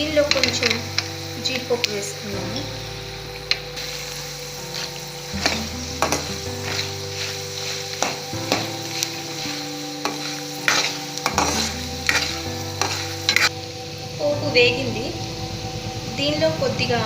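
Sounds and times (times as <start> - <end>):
food sizzling in hot oil: 0.0 - 17.0
spatula scraping a pan: 3.5 - 13.6.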